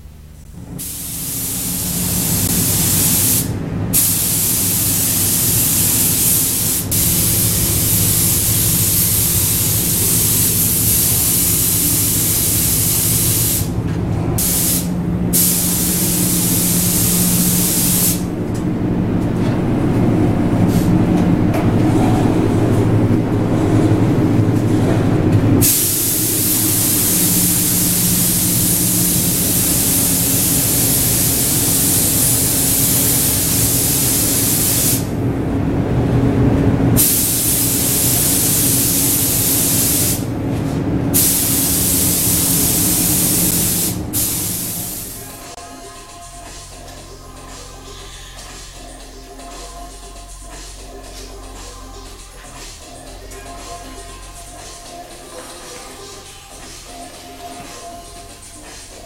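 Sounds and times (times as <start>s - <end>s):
steady low hum: 0.0s - 59.0s
paint spray gun hissing: 0.8s - 13.8s, 14.4s - 18.3s, 25.6s - 35.1s, 37.0s - 40.3s, 41.2s - 45.5s.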